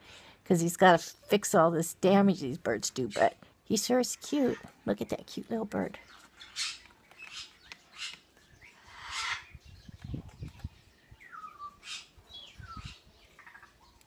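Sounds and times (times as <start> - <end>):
parrot chirps and clicks: 6.5 - 8.3.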